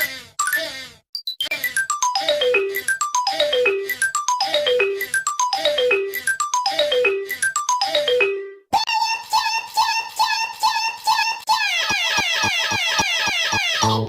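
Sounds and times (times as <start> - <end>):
electronic ringtone jingle: 1.2 - 8.7.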